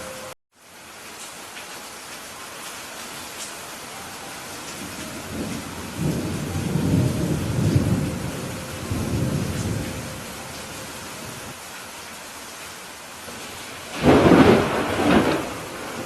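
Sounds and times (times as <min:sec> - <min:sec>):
steady rain hiss: 0:00.0 - 0:16.0
thunder rumbling: 0:04.6 - 0:11.6, 0:13.3 - 0:16.0.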